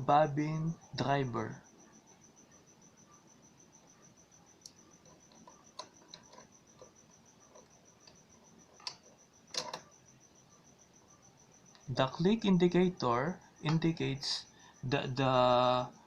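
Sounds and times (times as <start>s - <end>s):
faint high-pitched pulsing tone: 0.0s - 16.0s
small metal clicks and taps: 8.8s - 9.9s.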